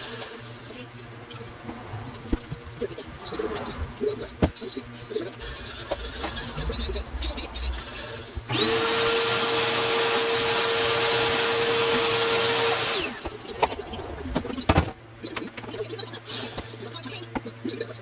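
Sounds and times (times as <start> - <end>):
power tool motor whine: 8.5 - 13.5.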